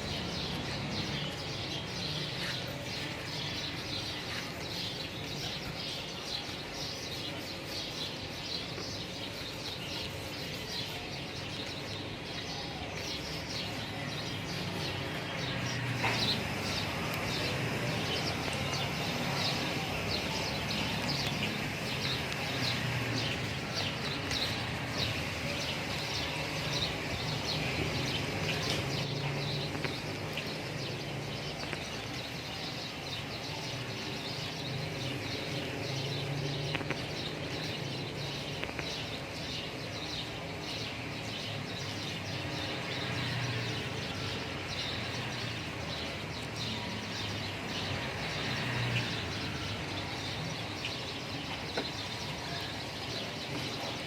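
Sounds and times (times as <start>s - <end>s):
small birds chirping: 0.0s - 54.0s.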